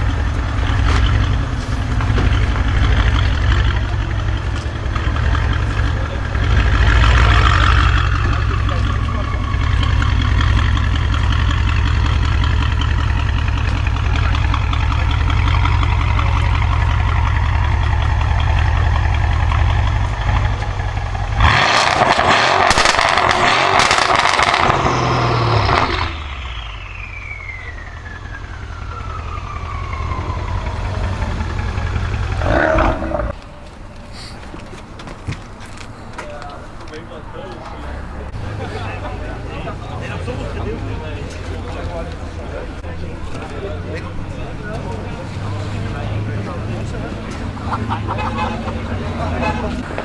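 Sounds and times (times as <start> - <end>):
exhaust crackles and bangs: 0.0 - 33.8, 38.3 - 50.0
car engine idling and revving: 0.0 - 50.0
turbo whistle: 25.8 - 31.7.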